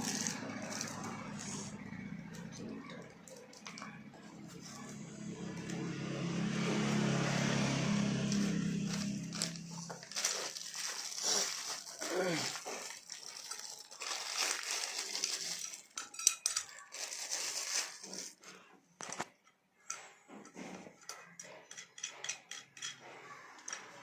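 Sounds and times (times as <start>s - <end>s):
small parts clinking and tapping: 0.0s - 1.7s, 2.3s - 4.0s, 8.4s - 24.0s
rustling: 8.2s - 19.3s.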